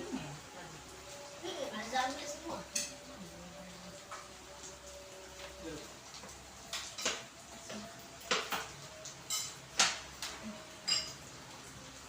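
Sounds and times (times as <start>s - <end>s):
dishes and cutlery clinking: 2.6s - 3.1s, 6.6s - 11.3s.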